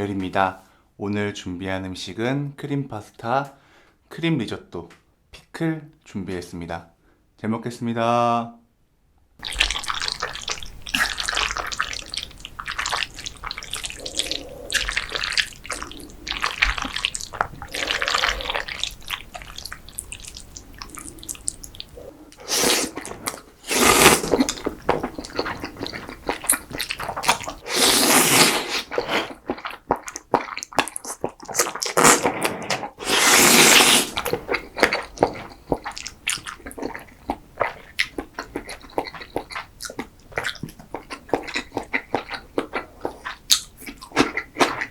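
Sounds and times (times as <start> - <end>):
wet chewing and lip-smacking: 9.4 - 44.9
wet slurps: 9.4 - 44.9.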